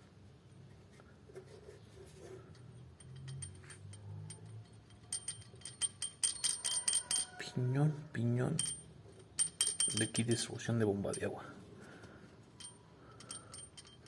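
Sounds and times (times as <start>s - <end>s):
small metal parts clinking: 2.6s - 7.5s, 8.5s - 11.3s, 12.4s - 14.0s.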